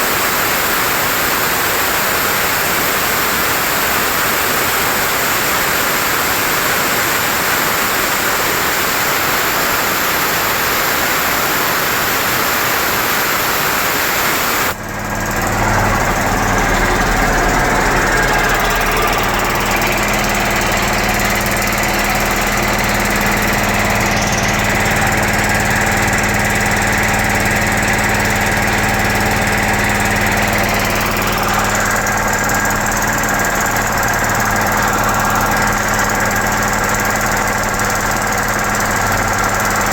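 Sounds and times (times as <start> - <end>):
steady hiss: 0.0 - 14.8
air compressor humming: 0.0 - 39.9.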